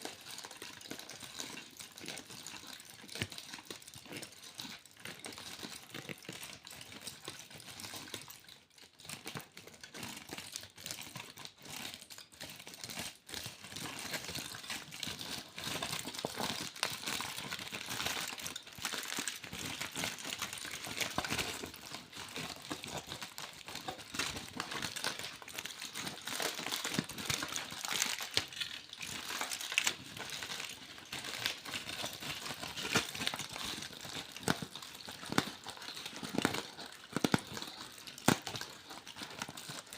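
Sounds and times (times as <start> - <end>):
foil crinkling: 11.4 - 39.9.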